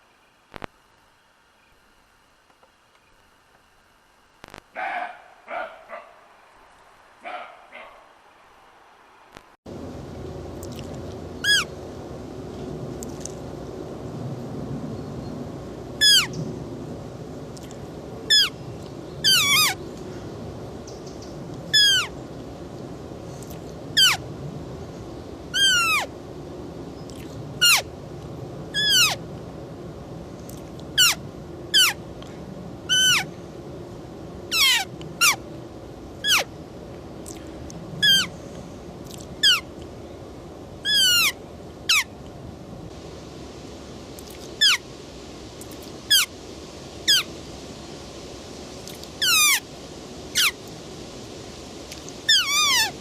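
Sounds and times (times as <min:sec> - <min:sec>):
deer high-pitched calls: 0:11.4 - 0:11.7, 0:36.2 - 0:36.5, 0:52.3 - 0:53.0.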